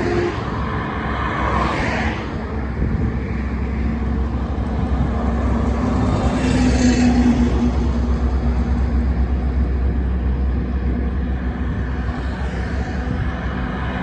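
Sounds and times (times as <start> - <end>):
highway traffic rumble: 0.0 - 14.0
vehicle passing: 0.0 - 14.0.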